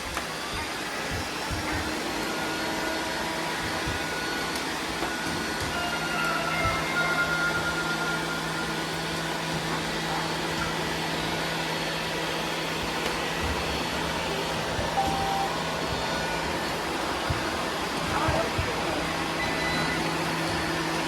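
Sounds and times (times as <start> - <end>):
robot vacuums whirring: 0.0 - 21.0
short beep: 15.0 - 15.6.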